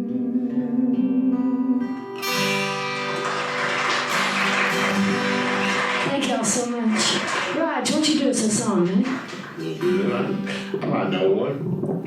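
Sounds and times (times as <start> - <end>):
acoustic guitar strummed chord: 2.1 - 5.9.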